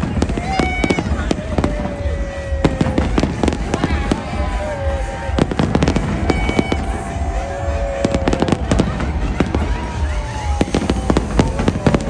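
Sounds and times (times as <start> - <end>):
firework bangs and crackles: 8.1 - 12.0.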